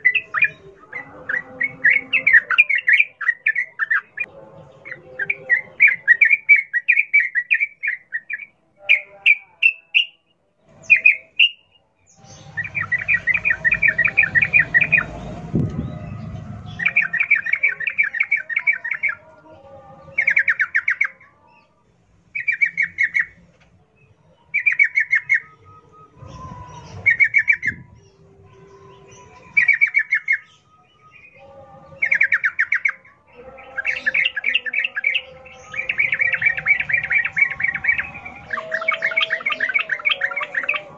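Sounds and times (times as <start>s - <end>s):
bird singing chattering phrases: 22.4s - 23.4s.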